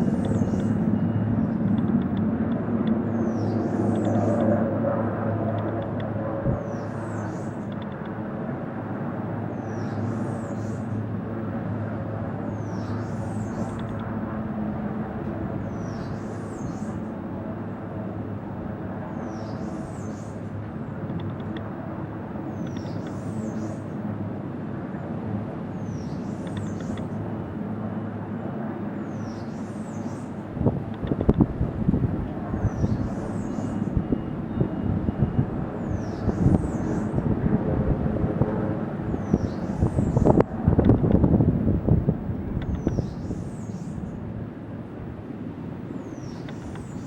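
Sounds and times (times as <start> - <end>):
engine drone: 0.0 - 8.8.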